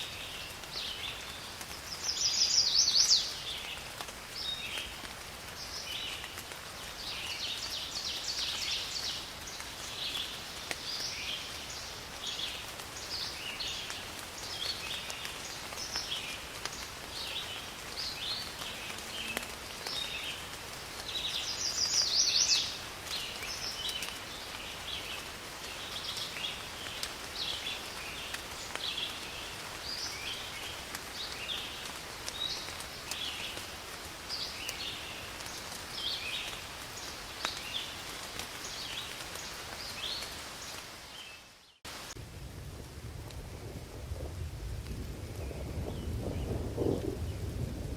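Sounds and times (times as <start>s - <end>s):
rain hiss: 0.0s - 47.9s.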